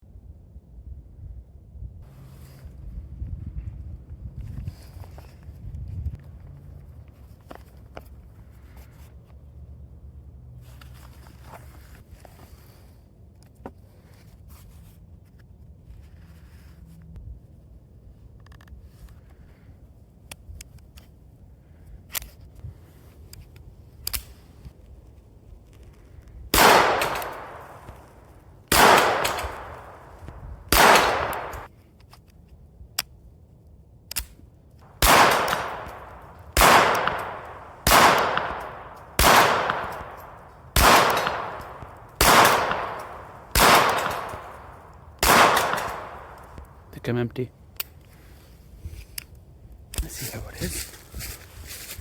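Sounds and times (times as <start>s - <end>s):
pistol handling clicks: 24.0s - 24.4s, 26.6s - 32.4s, 34.1s - 46.8s
pistol shots with echo: 26.6s - 31.7s, 34.9s - 46.8s.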